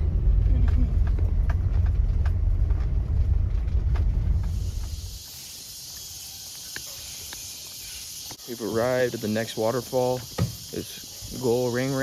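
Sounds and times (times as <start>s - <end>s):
low rumble: 0.0s - 5.2s
insects droning: 1.2s - 12.0s.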